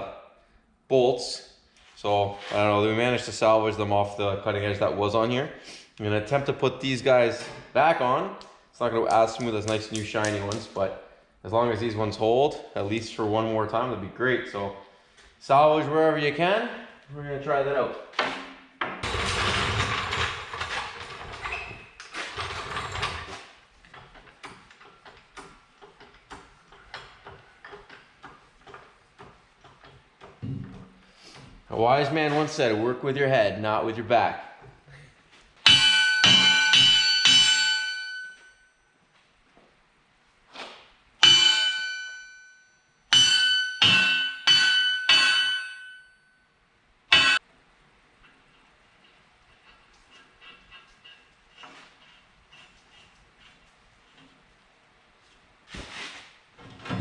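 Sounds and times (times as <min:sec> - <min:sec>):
metal tools clattering: 0:19.0 - 0:25.0, 0:43.2 - 0:46.1
hammer striking ringing steel: 0:35.7 - 0:38.7, 0:41.2 - 0:46.4, 0:47.1 - 0:47.4.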